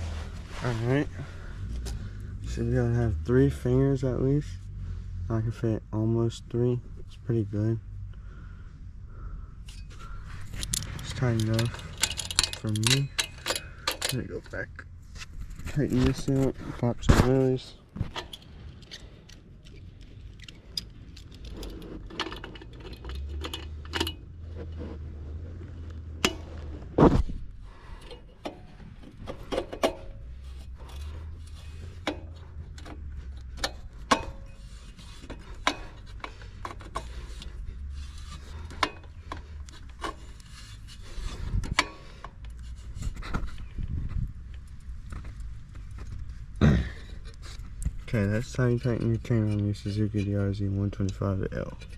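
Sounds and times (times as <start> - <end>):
socket wrench clicking: 10.4 - 14.2.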